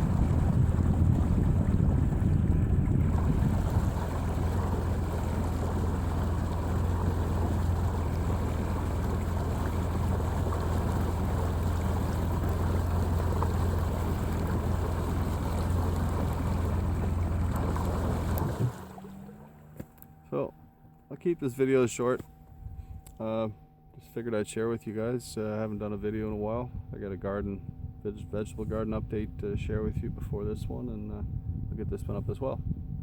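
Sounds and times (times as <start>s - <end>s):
wind noise: 0.0s - 5.5s, 26.6s - 33.0s
rushing water: 0.0s - 19.5s
boat engine humming: 0.0s - 33.0s.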